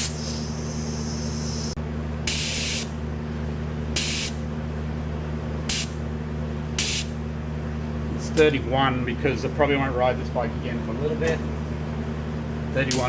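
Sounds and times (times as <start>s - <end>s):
compressed air hissing into tyre: 0.0s - 2.9s, 4.0s - 4.4s, 5.7s - 6.0s, 6.8s - 7.2s.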